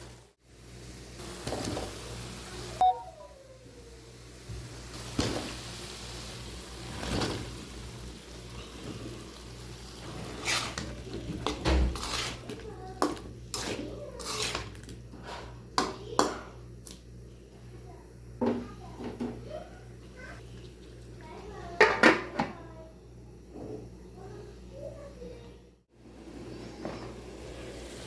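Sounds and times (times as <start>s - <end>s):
utensils clattering against pots: 10.0s - 16.6s.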